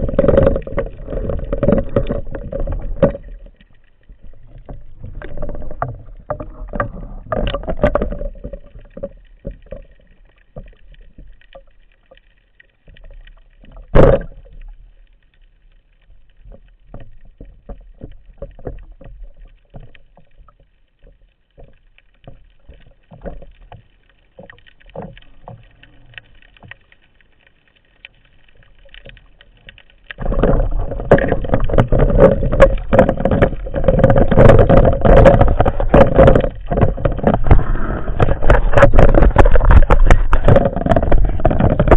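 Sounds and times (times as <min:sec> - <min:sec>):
churning water: 0:00.0 - 0:10.0, 0:28.9 - 0:41.9
faint underwater clicks and knocks: 0:00.0 - 0:41.9.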